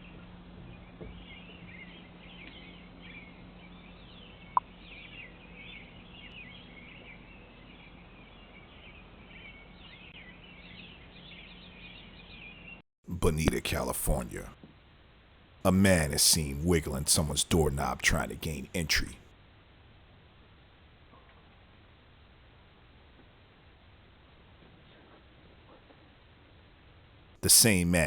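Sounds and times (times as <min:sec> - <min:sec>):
birds chirping: 0:00.6 - 0:14.5
steady low hum: 0:13.1 - 0:14.6, 0:15.6 - 0:19.3, 0:27.4 - 0:28.0.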